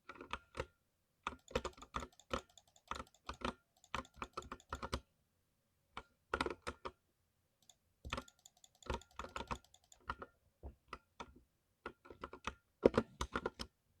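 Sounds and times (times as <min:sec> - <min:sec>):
mechanical keyboard typing: 0:01.3 - 0:05.1, 0:07.6 - 0:10.3.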